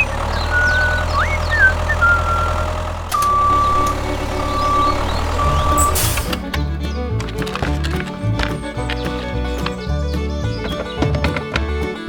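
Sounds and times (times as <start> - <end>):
short whistling chirps: 0.0 - 6.3
back-up alarm beeping: 0.0 - 6.4
heavy machine engine droning: 0.0 - 12.0.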